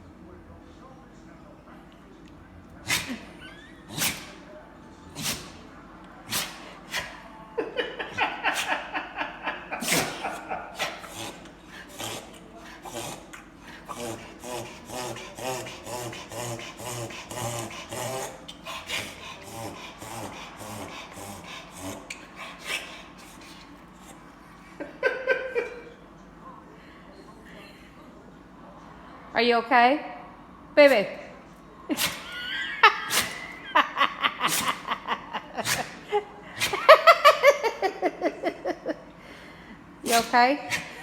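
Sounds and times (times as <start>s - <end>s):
pet sneezing: 2.8s - 4.5s, 5.1s - 7.3s, 8.0s - 9.0s, 9.7s - 24.3s, 31.9s - 33.7s, 34.4s - 37.3s, 40.0s - 41.0s.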